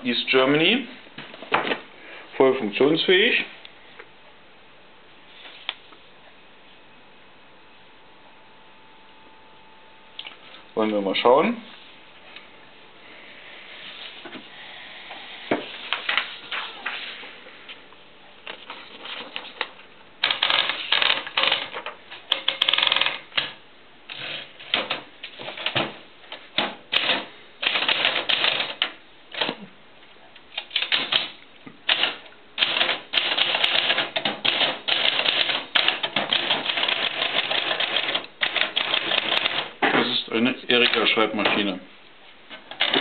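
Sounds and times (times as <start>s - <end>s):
mechanical typewriter typing: 19.2s - 25.9s, 26.5s - 29.6s, 30.6s - 39.8s, 42.7s - 43.0s.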